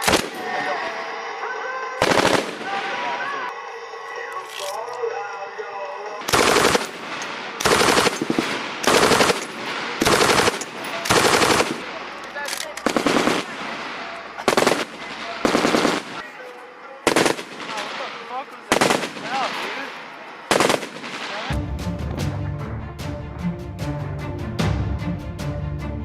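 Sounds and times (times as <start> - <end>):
machine gun firing bursts: 0.0 - 0.4, 2.0 - 2.9, 6.2 - 12.1, 12.8 - 16.2, 17.0 - 19.7, 20.5 - 21.5.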